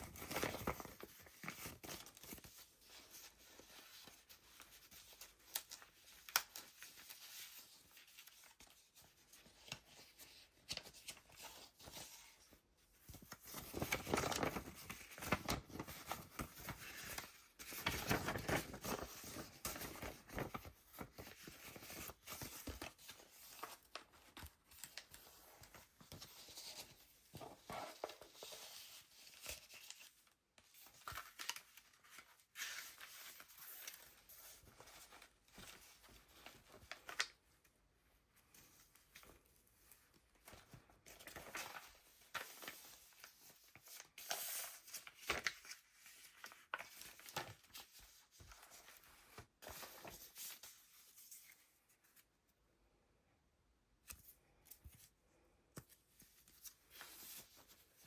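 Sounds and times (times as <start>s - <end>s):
paper pages rustling: 0.0s - 37.5s, 38.5s - 52.3s, 54.0s - 58.0s.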